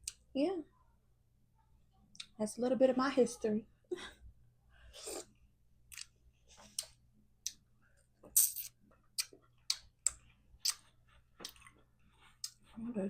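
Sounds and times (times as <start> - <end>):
eating wet clicks and smacks: 5.9 - 7.6, 8.2 - 11.8.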